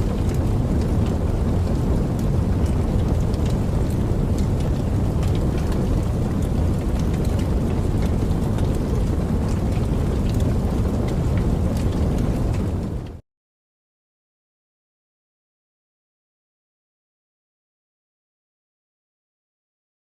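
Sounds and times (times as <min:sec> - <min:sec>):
campfire crackling and popping: 0:00.0 - 0:13.2.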